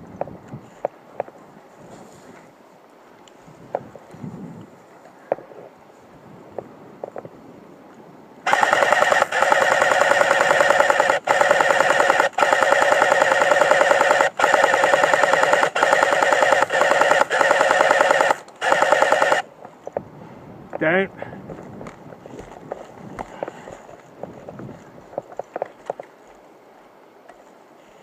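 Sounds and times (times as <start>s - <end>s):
airsoft gun firing full auto: 8.5s - 19.5s
gearbox whine: 8.5s - 19.5s.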